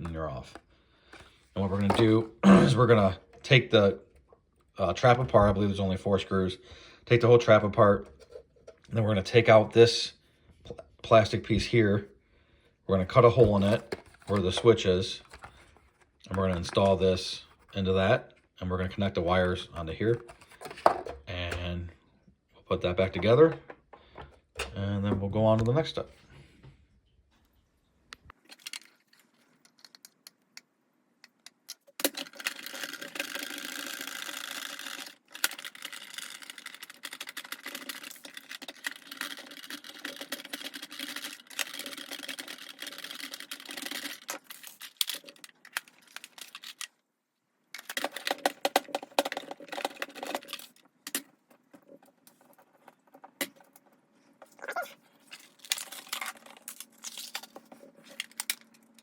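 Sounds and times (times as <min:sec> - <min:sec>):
screwdriver unscrewing plastic: 0:15.2 - 0:16.8
plastic parts clicking: 0:15.2 - 0:16.9, 0:28.4 - 0:47.0, 0:47.7 - 0:54.6, 0:55.4 - 0:59.0.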